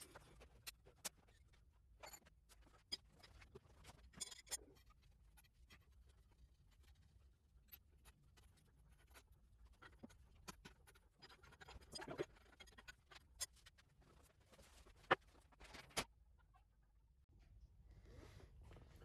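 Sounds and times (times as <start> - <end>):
metal parts clicking and scraping: 2.0 - 5.5.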